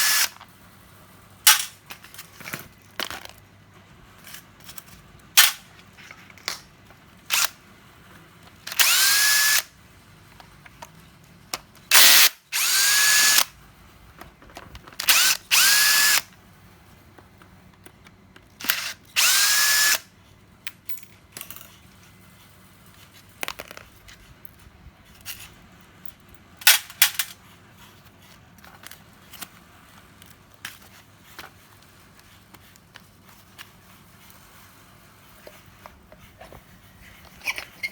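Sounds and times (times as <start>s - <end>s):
handling noises: 1.5s - 7.5s, 20.7s - 37.9s
power tool motor whining: 8.7s - 9.7s, 11.9s - 13.5s, 15.0s - 16.2s, 18.7s - 20.0s.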